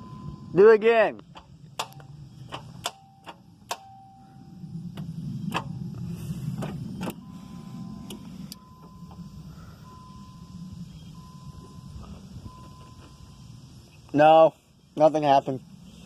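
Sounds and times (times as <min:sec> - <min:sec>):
steady high tone: 0:00.0 - 0:01.2, 0:02.9 - 0:06.2, 0:06.8 - 0:15.4
low mechanical rumble: 0:00.0 - 0:16.0
ignition clicks: 0:01.2 - 0:04.2, 0:04.9 - 0:05.8, 0:06.6 - 0:07.3, 0:08.0 - 0:09.2.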